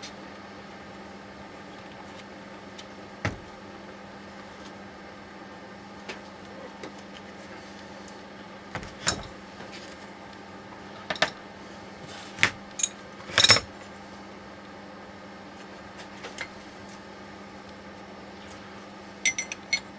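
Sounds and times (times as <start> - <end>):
metal parts and tools clinking: 12.8 - 13.7, 19.2 - 19.9.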